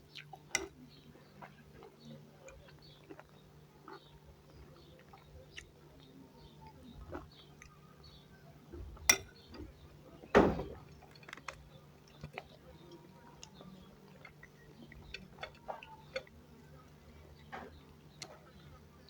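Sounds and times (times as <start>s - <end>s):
cutlery clinking against a plate: 0.5s - 0.8s, 9.0s - 9.7s.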